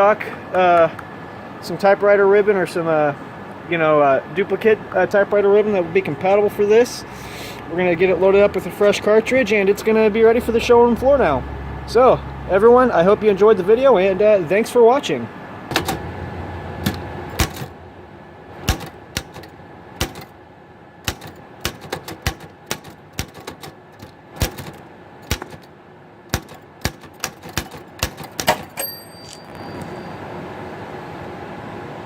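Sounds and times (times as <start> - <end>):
typewriter keys striking: 16.8 - 17.7, 18.6 - 20.3, 21.0 - 25.7, 26.3 - 29.4
typewriter bell ringing: 28.5 - 30.2.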